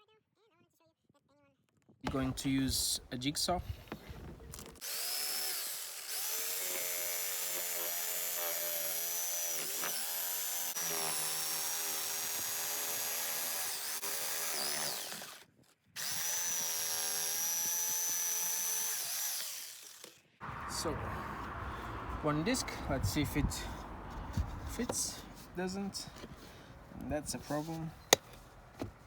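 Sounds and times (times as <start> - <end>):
electric jigsaw cutting: 4.8 - 20.3.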